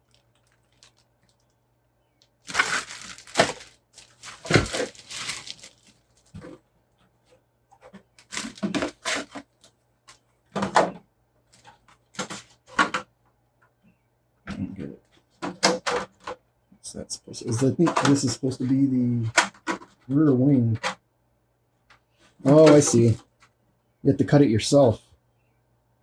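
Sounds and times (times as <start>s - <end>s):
plastic packaging rustling: 0.0s - 6.6s, 7.9s - 9.6s, 22.4s - 23.2s.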